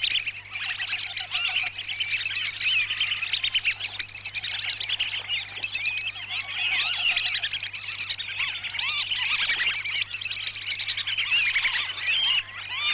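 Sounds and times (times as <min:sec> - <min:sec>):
whistling ducks calling: 0:00.0 - 0:12.9.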